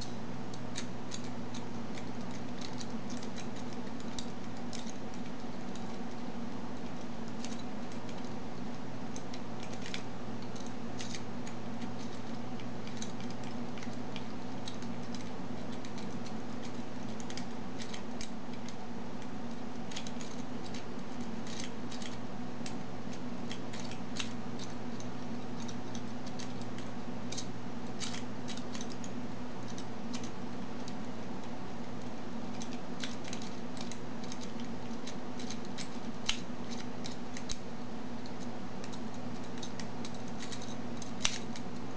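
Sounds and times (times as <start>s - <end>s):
steady low hum: 0.0s - 41.9s.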